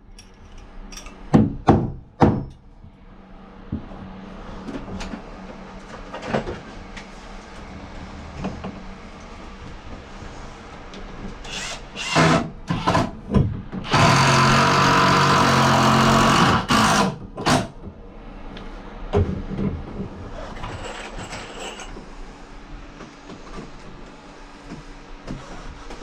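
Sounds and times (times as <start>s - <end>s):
power drill running: 11.4s - 13.0s, 13.8s - 17.2s.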